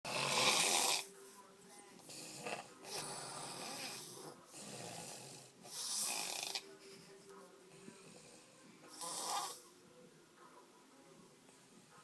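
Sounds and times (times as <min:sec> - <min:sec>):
man snoring: 0:00.1 - 0:01.1, 0:02.1 - 0:06.6, 0:08.0 - 0:09.6.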